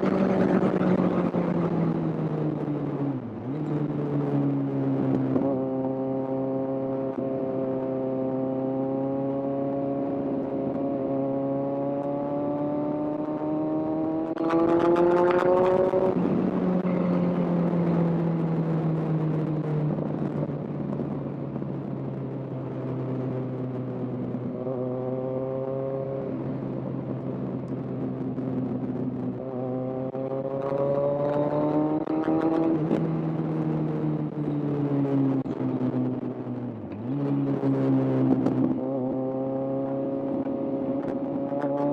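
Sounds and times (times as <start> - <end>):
motorcycle engine accelerating: 0.0 - 41.9.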